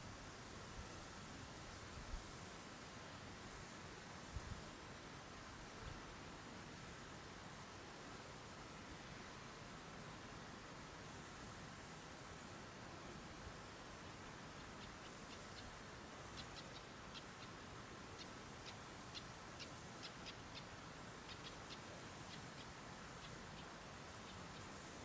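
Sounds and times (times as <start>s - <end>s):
faint outdoor hiss: 0.0s - 25.0s.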